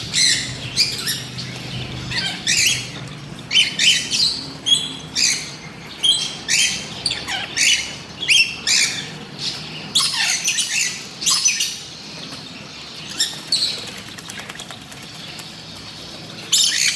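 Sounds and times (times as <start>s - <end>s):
birds chirping and squawking: 0.0s - 16.9s.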